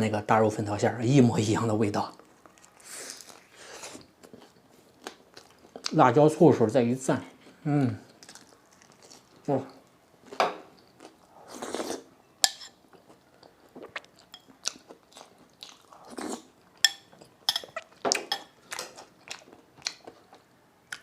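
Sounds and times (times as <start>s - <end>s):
crunching fried buns: 7.5s - 12.1s
wet chewing: 8.1s - 9.4s, 10.2s - 21.0s.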